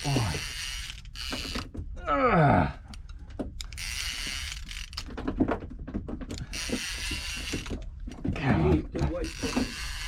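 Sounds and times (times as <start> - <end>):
fishing reel ratchet clicking: 0.0 - 1.7, 3.6 - 5.1, 6.4 - 7.8, 9.2 - 10.0.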